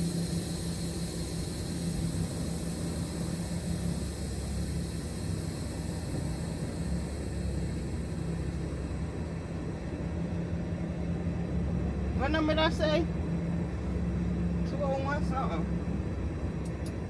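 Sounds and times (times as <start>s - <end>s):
steady hiss: 0.0s - 9.7s
diesel engine running: 0.0s - 17.0s.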